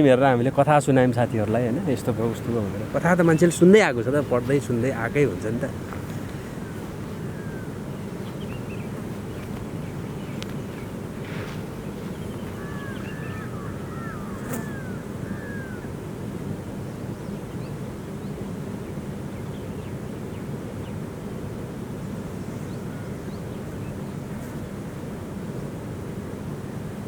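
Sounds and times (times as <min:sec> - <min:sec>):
bird chirps: 0:01.3 - 0:15.8.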